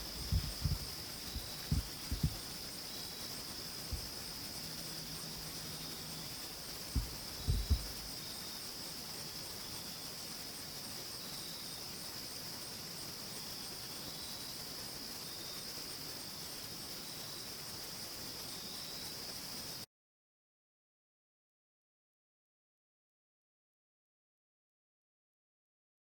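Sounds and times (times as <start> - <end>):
soft low thumps: 0.0 - 2.5, 3.9 - 4.2, 6.9 - 8.1
crickets trilling: 0.0 - 19.8
insect chirps: 0.0 - 19.9.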